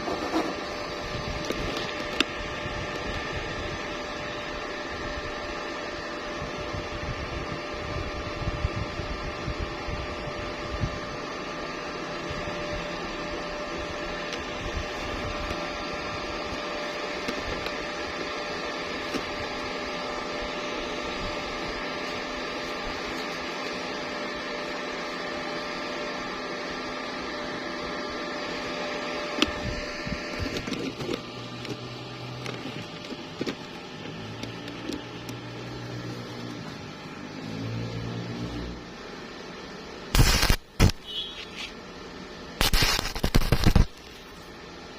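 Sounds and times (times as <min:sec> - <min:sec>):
welding arc crackling: 0:40.1 - 0:41.8, 0:42.6 - 0:44.2.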